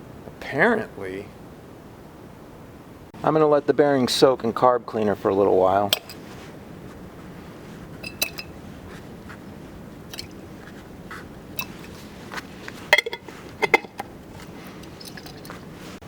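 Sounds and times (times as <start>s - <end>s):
steady low hum: 0.0s - 16.0s
small metal parts clinking: 8.0s - 8.5s, 12.9s - 15.7s.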